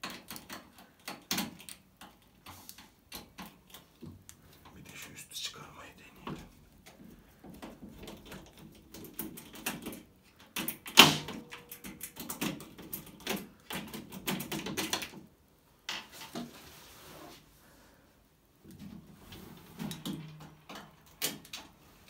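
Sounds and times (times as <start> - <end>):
knocks and rattles of metal casing: 0.0 - 4.8, 6.8 - 15.3.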